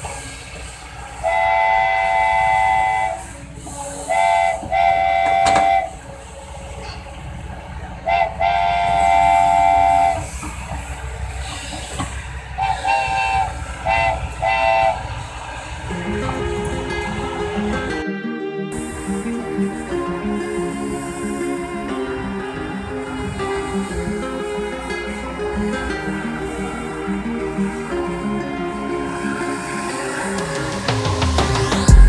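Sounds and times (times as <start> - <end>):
multi-tone horn blasts: 1.2 - 3.4, 4.1 - 6.0, 8.0 - 10.3, 12.6 - 15.1.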